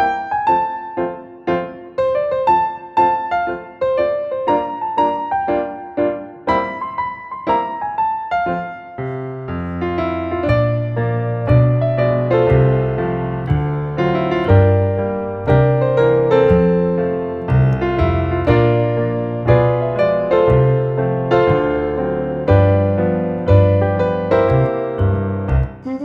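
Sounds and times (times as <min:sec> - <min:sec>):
low bass part: 0:10.1 - 0:25.9
melody of struck decaying notes: 0:11.5 - 0:25.8.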